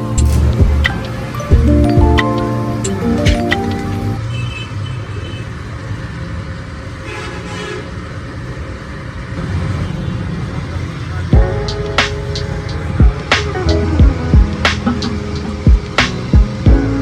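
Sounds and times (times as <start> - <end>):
machine rumbling: 0.0 - 2.2.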